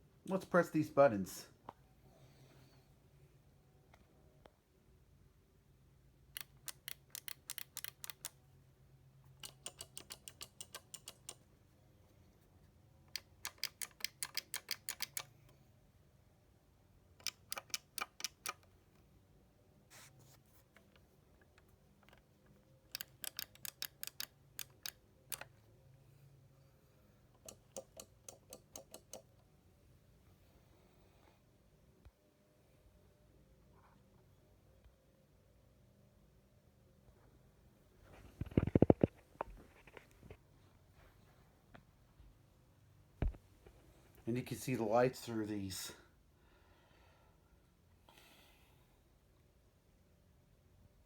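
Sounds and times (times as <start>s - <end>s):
elevator buttons clicking: 9.4s - 11.4s.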